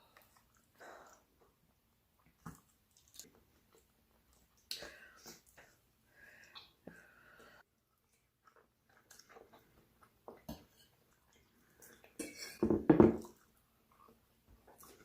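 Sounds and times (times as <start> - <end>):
chewing: 0.0 - 1.6, 2.2 - 5.8, 7.8 - 12.3, 13.2 - 15.0.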